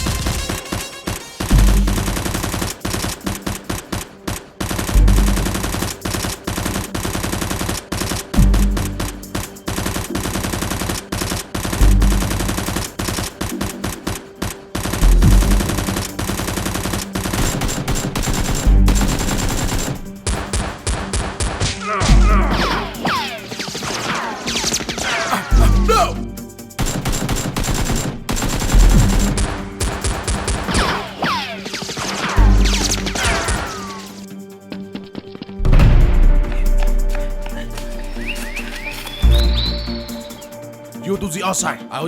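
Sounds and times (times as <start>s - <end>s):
rapid automatic gunfire: 0.0s - 21.8s, 26.8s - 34.2s
action music: 0.0s - 42.0s
heavy bass hit: 35.6s - 37.9s.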